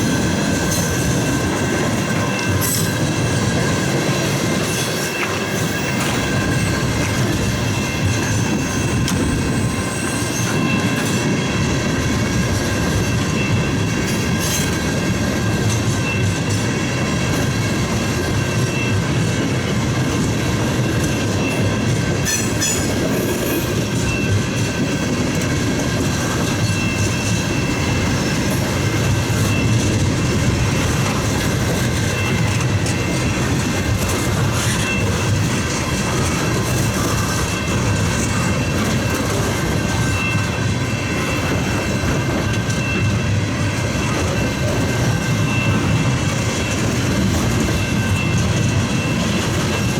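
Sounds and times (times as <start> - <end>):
train wheels rumbling on rails: 0.0 - 49.9.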